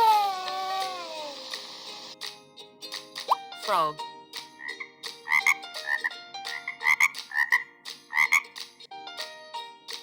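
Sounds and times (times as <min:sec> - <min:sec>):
frog croaking: 0:04.6 - 0:06.0, 0:06.6 - 0:08.4.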